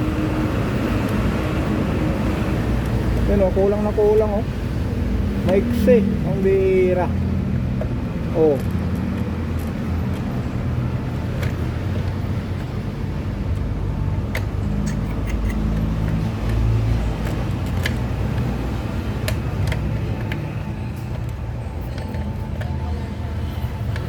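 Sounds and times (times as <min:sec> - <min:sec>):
low engine hum: 0:00.0 - 0:24.0
clicks of parts being handled: 0:13.5 - 0:22.8.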